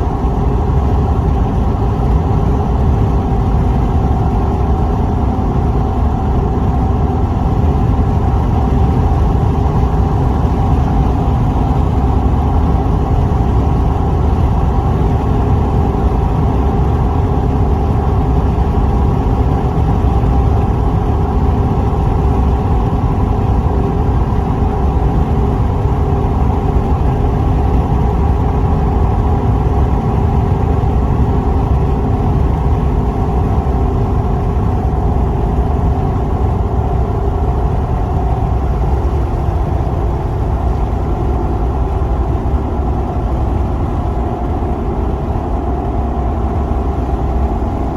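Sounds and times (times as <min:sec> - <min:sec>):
wind low rumble: 0:00.0 - 0:47.9.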